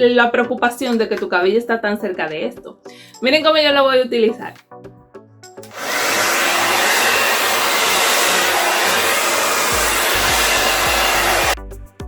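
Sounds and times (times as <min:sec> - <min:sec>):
dryer brush blowing air: 0:05.7 - 0:11.6.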